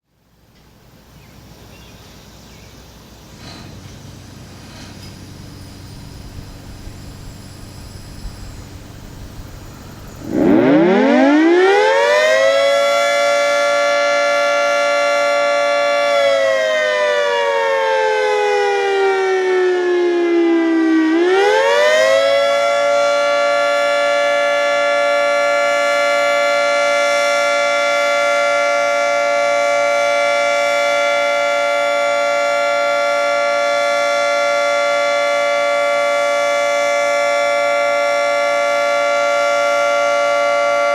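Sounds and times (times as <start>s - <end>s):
warning siren winding: 10.1s - 16.5s.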